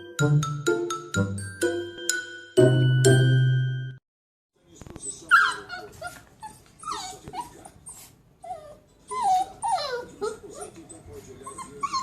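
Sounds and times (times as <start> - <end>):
chiming musical note: 0.0 - 4.0
puppy whimpering and whining: 5.0 - 12.0.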